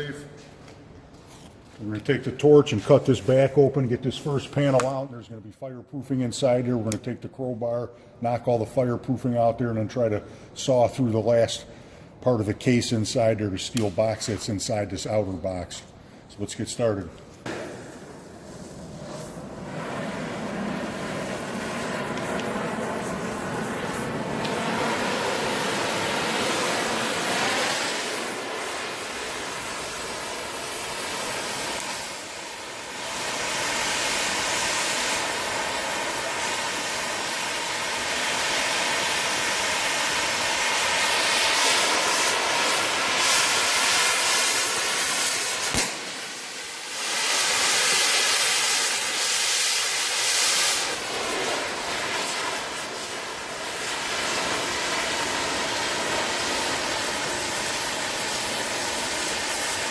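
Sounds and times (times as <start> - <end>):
sharp click: 13.7 - 14.0, 45.6 - 46.1
cutting torch hissing: 17.5 - 59.9.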